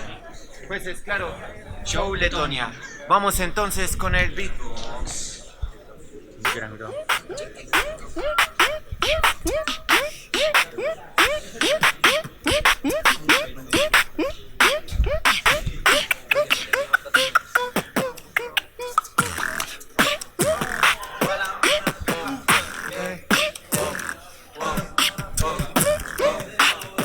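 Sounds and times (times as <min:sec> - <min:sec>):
hip hop beat: 0:06.4 - 0:27.0.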